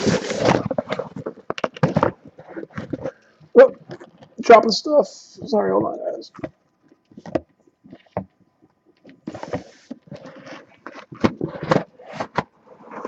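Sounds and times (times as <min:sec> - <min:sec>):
objects tapping and knocking: 0:00.0 - 0:03.2, 0:05.8 - 0:12.6.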